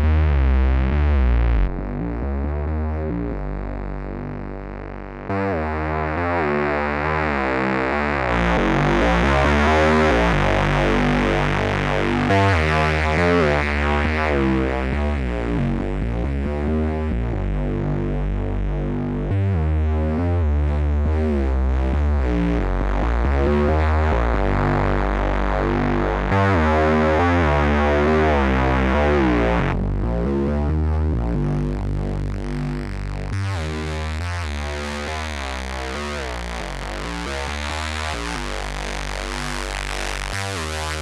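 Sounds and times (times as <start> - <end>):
synthesizer bass sequence: 0.0 - 41.0.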